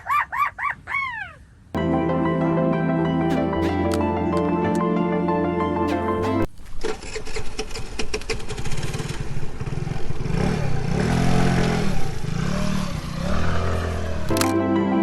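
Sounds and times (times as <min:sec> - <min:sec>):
music: 0:01.8 - 0:06.5, 0:14.3 - 0:15.0
engine-like revving: 0:08.9 - 0:14.3.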